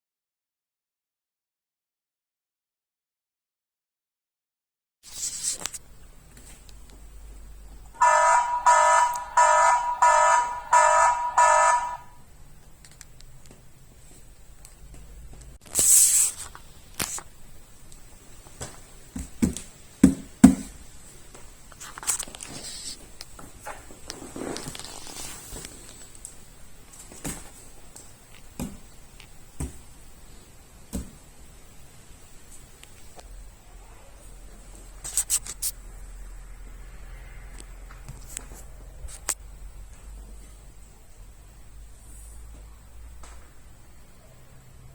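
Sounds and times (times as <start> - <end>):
alarm buzzer beeping: 8.0 - 12.2
short hiss: 15.7 - 17.2.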